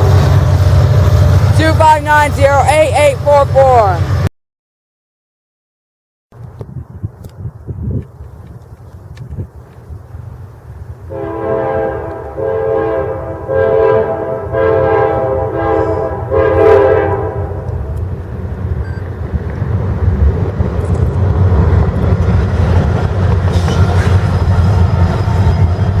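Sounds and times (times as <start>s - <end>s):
rail noise: 0.0s - 4.3s, 6.4s - 26.0s
train rolling past rumbling: 0.0s - 4.3s, 6.4s - 26.0s
locomotive air horn blasts: 11.1s - 17.9s.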